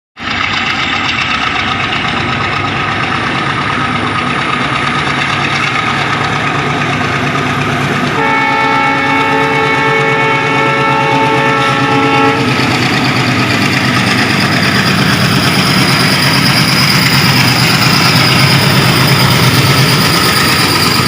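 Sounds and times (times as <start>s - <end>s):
diesel locomotive engine chugging: 0.2s - 21.0s
multi-tone train horn: 8.1s - 12.9s.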